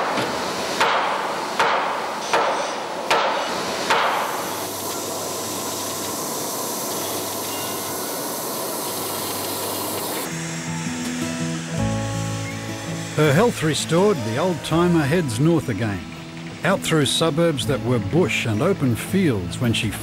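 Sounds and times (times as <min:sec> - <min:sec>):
hammer striking metal pipe: 0:00.0 - 0:05.0
steam hissing: 0:00.0 - 0:20.0.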